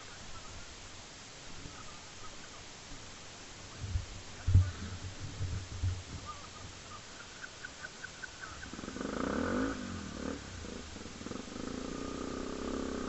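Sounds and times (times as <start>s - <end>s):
motorcycle engine running: 8.5s - 13.0s.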